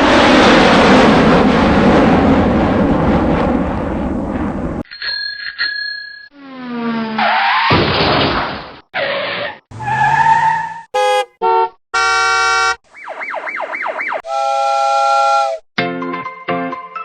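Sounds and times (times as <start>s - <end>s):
siren-like wail: 11.0s - 11.3s
long buzzer tone: 11.0s - 11.4s
held horn-like tone: 11.0s - 12.8s.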